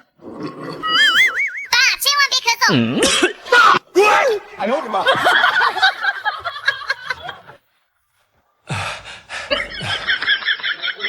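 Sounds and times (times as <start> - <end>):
person snickering and laughing: 8.7 - 11.0.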